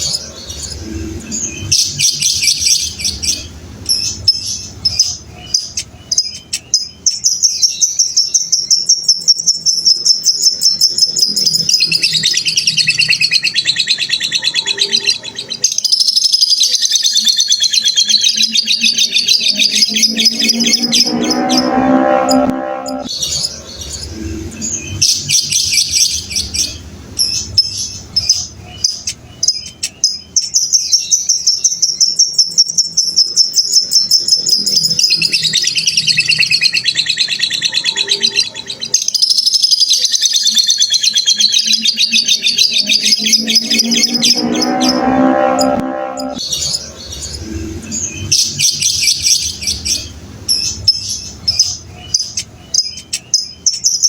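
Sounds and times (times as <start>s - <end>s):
lower bird call: 41.1s - 50.0s.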